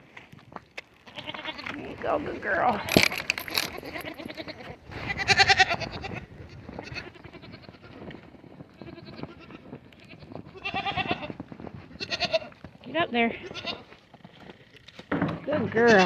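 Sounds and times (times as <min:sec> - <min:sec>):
goats bleating: 0:01.0 - 0:11.4, 0:12.0 - 0:12.6, 0:13.2 - 0:14.0, 0:15.6 - 0:16.0.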